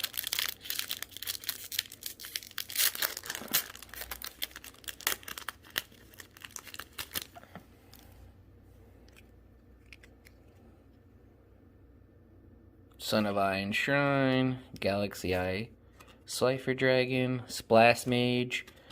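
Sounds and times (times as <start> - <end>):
wrapper tearing and crinkling: 0.0 - 7.5.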